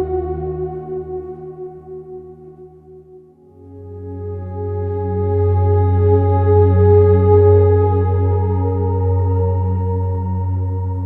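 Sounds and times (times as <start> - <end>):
ambient music chords: 0.0 - 11.0.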